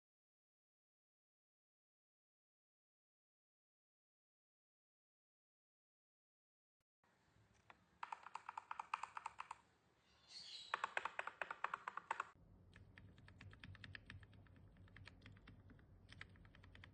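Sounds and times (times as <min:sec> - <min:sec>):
typing on mechanical keyboard: 0:08.0 - 0:09.6, 0:10.7 - 0:16.9.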